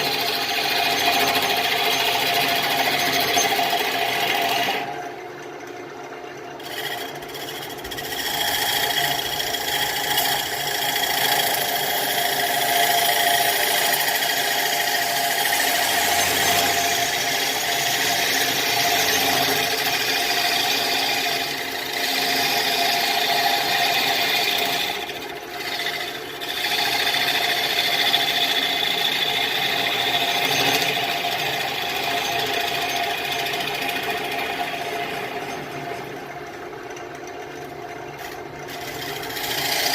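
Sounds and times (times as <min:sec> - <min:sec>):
lathe machine hum: 0:00.0 - 0:39.9.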